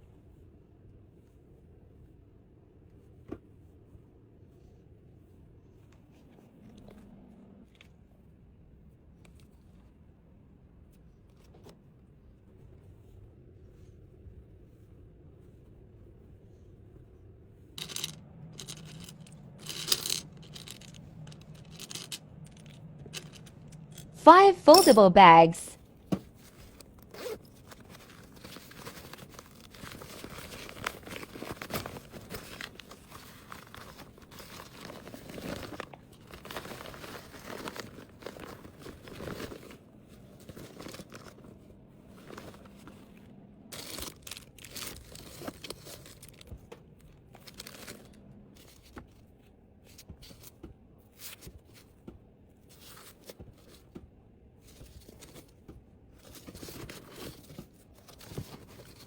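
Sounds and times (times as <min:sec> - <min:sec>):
plastic packaging crinkling: 0:27.5 - 0:39.7.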